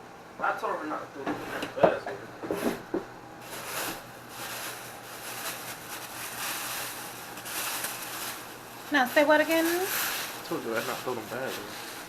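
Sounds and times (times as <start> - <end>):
plastic bag rustling: 2.6 - 12.0.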